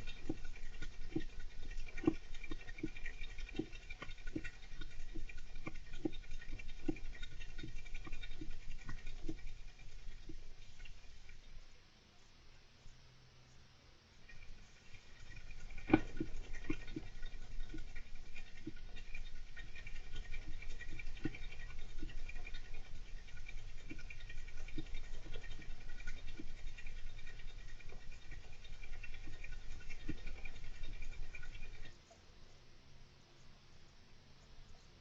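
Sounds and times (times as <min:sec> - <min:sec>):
hamster scratching and scrabbling: 0:00.0 - 0:11.6, 0:14.2 - 0:32.0.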